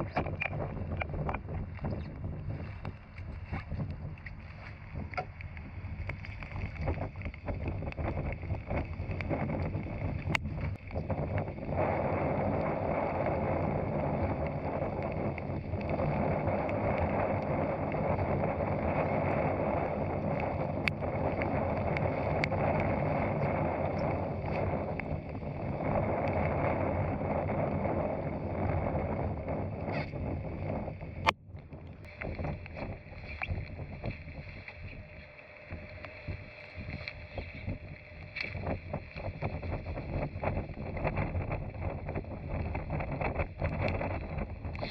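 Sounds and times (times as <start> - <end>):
outboard motor running: 0.0 - 44.9
wind: 0.0 - 44.9.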